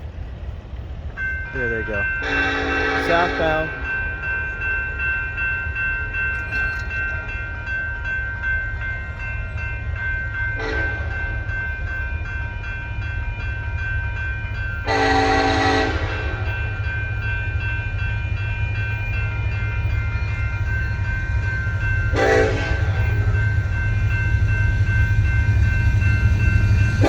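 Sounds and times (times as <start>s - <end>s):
freight train rumbling past: 0.0s - 27.0s
high ringing tone: 1.2s - 15.9s
locomotive air horn blast: 2.2s - 3.6s, 14.9s - 16.4s, 22.2s - 23.0s.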